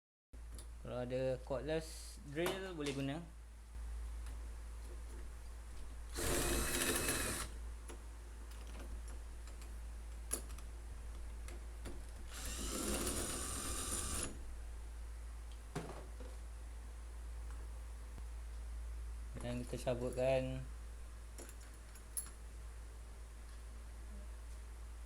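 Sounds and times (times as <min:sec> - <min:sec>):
cordless drill whirring: 0:06.1 - 0:07.5, 0:12.3 - 0:14.4.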